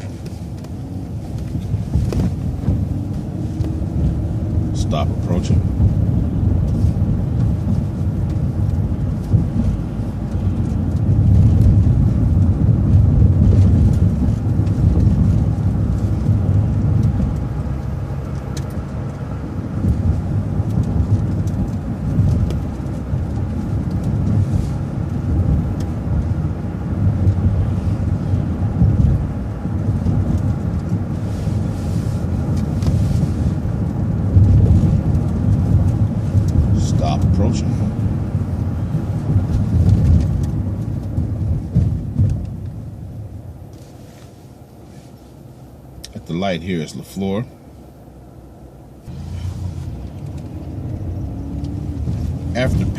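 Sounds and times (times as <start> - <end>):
bus engine and road rumble: 0.0 - 52.9.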